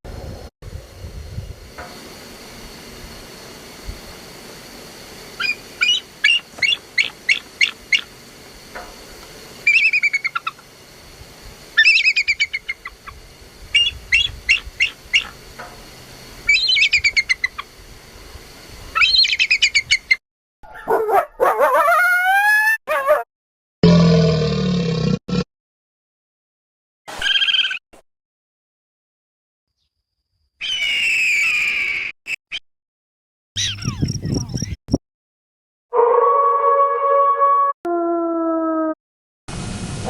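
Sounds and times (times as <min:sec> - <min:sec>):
steady background hiss: 0:00.7 - 0:19.6
quick bird-like chirps: 0:05.4 - 0:08.1, 0:33.6 - 0:35.0.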